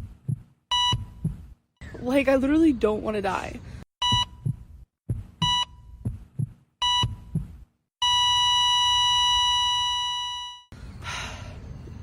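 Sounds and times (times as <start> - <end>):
low heartbeat thumps: 0.0 - 1.7, 4.0 - 7.8
heart monitor beeps: 0.3 - 1.5, 4.0 - 10.7
long flatline tone: 8.0 - 10.7.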